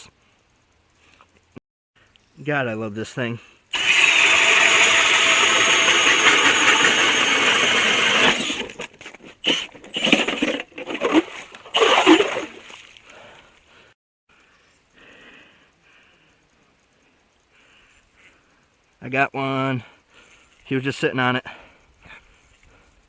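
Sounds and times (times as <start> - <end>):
ice auger motor whine: 3.7 - 12.6
blades cutting through ice: 3.8 - 8.8, 9.4 - 12.6.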